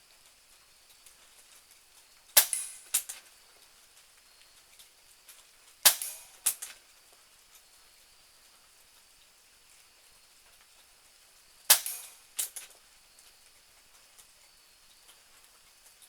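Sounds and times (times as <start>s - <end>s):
air pistol shot crack: 2.4s - 3.0s, 5.9s - 6.4s, 11.7s - 12.2s.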